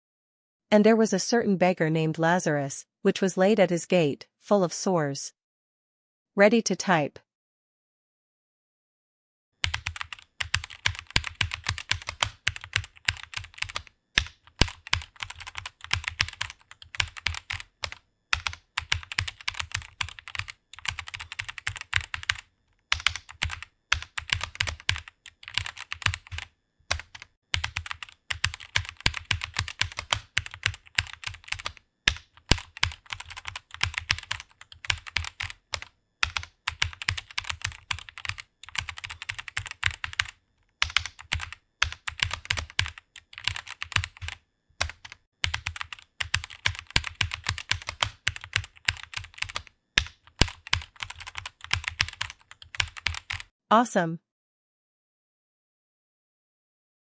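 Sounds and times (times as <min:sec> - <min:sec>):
rapid typing on keyboard: 0:09.6 - 0:53.5.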